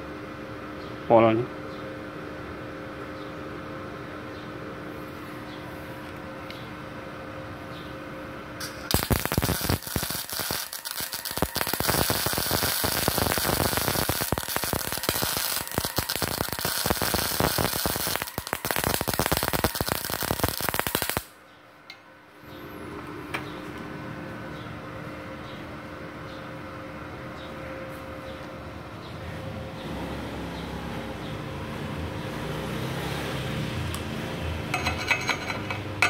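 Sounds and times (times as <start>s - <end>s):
steady hum: 0.0s - 32.3s
welding arc crackling: 8.6s - 21.4s.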